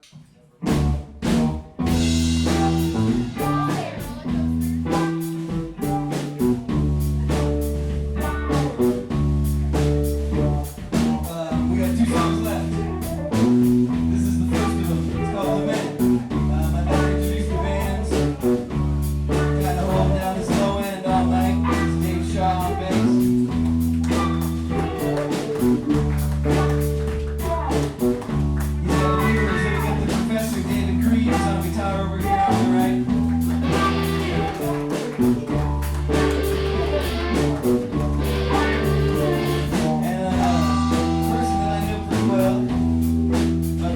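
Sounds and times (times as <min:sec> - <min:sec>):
blues-rock band playing: 0:00.6 - 0:43.9
slide guitar: 0:19.4 - 0:43.0.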